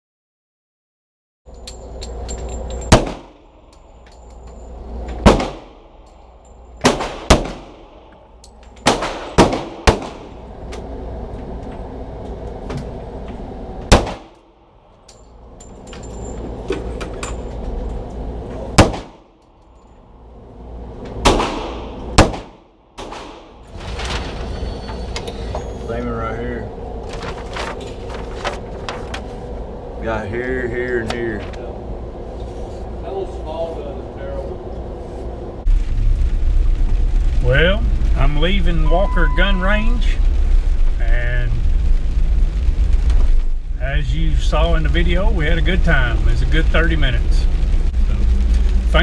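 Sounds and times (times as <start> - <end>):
ventilation low hum: 1.5 - 49.0.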